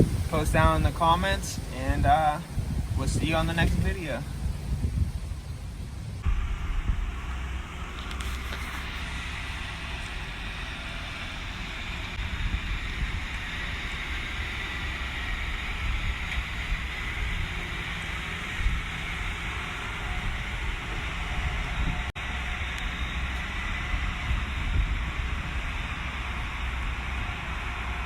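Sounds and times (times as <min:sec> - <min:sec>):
engine running: 0:00.0 - 0:28.0
steady noisy hiss: 0:00.0 - 0:28.0.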